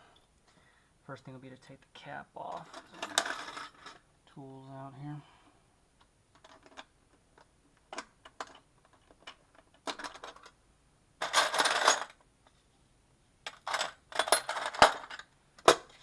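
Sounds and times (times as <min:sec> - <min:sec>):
metal parts rattling clatter: 0:02.6 - 0:04.0, 0:08.2 - 0:10.6, 0:11.2 - 0:12.2, 0:13.5 - 0:16.0
small metal tools clinking: 0:11.2 - 0:12.2, 0:13.5 - 0:15.9.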